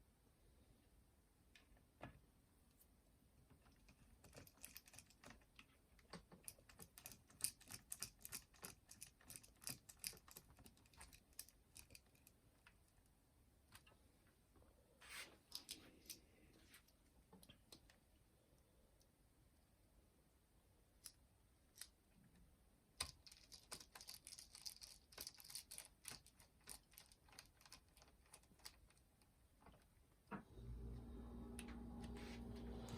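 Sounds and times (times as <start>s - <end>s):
hands handling parts clicking: 23.0s - 29.9s.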